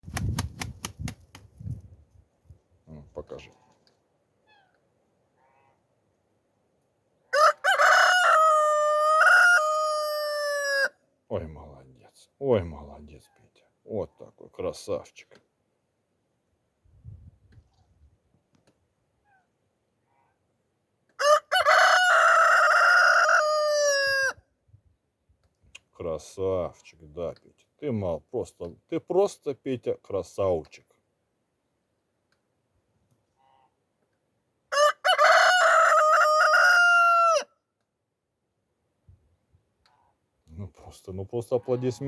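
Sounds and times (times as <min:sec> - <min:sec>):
rooster crowing: 0:07.3 - 0:10.9, 0:21.2 - 0:24.4, 0:34.7 - 0:37.5.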